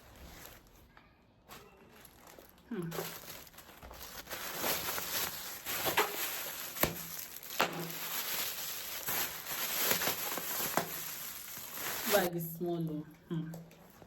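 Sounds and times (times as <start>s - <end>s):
handbag rustling: 1.5s - 12.3s.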